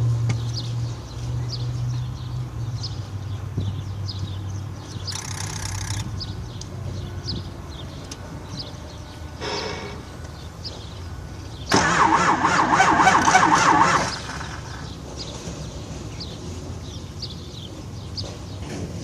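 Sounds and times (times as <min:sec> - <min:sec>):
engine cranking on starter motor: 0:11.7 - 0:14.9.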